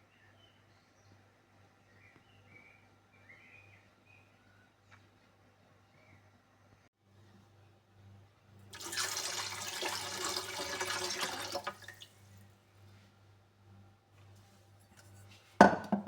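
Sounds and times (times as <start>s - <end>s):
water running from tap: 8.7s - 12.2s.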